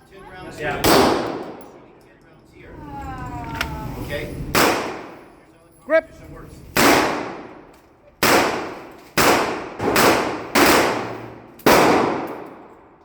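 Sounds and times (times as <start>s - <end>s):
pistol shots with echo: 0.8s - 1.8s, 4.6s - 5.3s, 6.8s - 13.0s.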